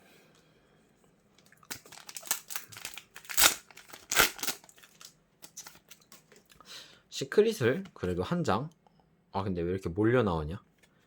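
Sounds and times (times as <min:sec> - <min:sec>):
foil wrapper crinkling and tearing: 0:01.4 - 0:06.4.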